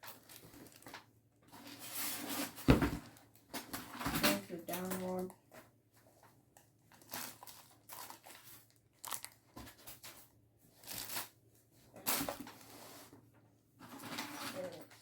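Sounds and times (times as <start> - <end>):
packaging crinkling and rustling: 0.0 - 5.3, 6.2 - 11.4.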